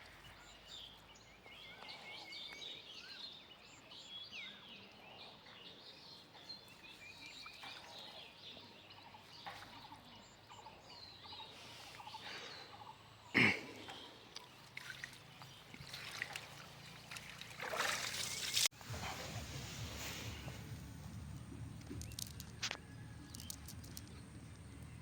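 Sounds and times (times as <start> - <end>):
birds calling: 0.0 - 25.0
water trickling and sloshing: 13.8 - 19.3
water splashing: 14.4 - 20.5.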